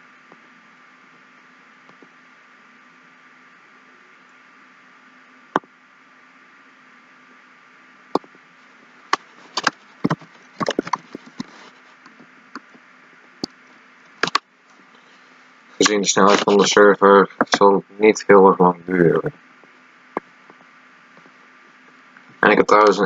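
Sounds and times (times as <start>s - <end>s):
faint steady hiss: 0.0s - 23.0s
computer mouse and keyboard clicks: 9.2s - 12.7s.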